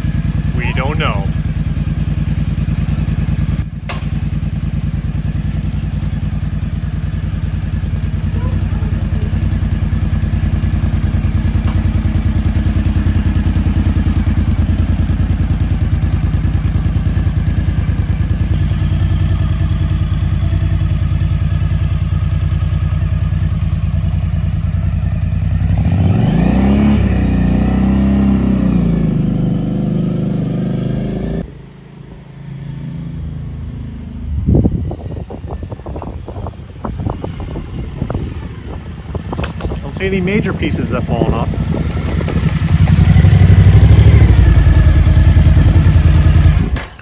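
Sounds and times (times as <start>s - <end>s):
motorcycle engine revving: 0.0s - 47.0s
wind rush: 34.2s - 43.4s.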